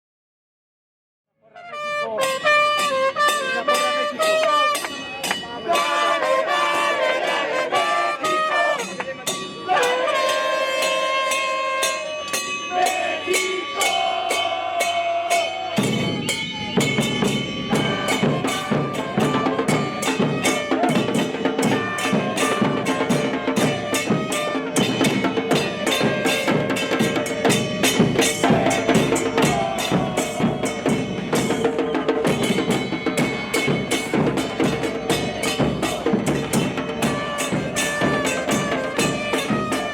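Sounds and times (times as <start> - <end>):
brass playing a melody: 1.4 - 5.0, 5.8 - 9.0, 9.7 - 12.2, 17.7 - 30.6, 37.0 - 39.9
drum beat: 14.8 - 39.9.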